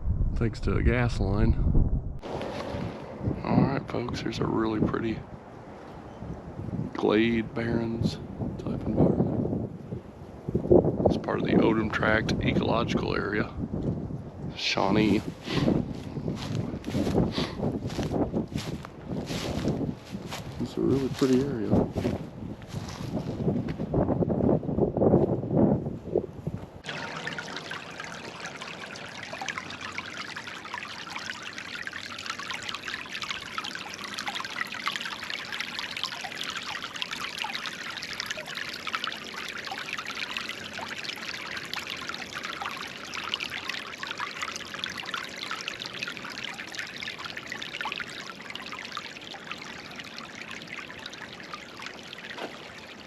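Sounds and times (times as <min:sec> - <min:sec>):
creek water trickling and splashing: 0:11.2 - 0:13.5, 0:14.5 - 0:23.6, 0:26.8 - 0:53.0.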